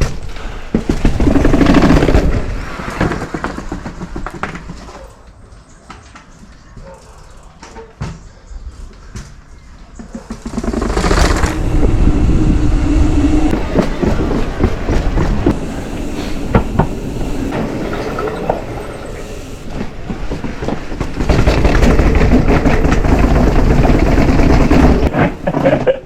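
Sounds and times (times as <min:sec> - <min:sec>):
bike tyre rumble: 0:00.0 - 0:05.0, 0:10.1 - 0:26.0
bike frame and chain rattling: 0:13.7 - 0:25.2.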